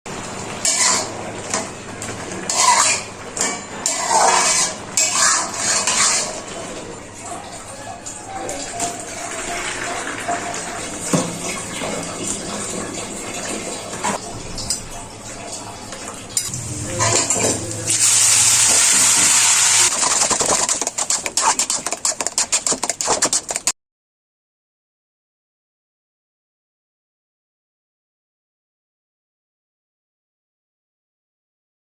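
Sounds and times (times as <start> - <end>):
metal spatula scraping pan: 0.6 - 6.8, 16.4 - 23.7.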